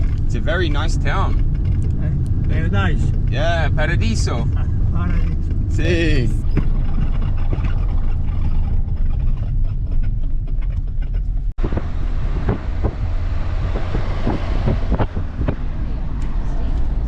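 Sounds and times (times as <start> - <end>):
car engine and road rumble: 0.0 - 17.0.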